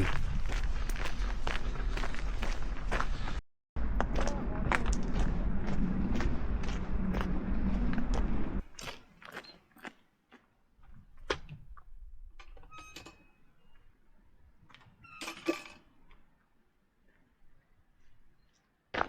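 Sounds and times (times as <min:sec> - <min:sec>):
footsteps crunching on stones: 0:00.0 - 0:03.4, 0:04.0 - 0:11.5.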